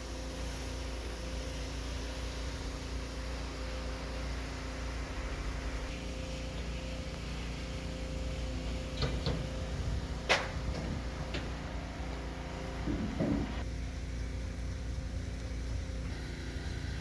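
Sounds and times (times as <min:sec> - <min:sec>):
low mechanical hum: 0:00.0 - 0:17.0
sharp knocks: 0:12.8 - 0:13.6.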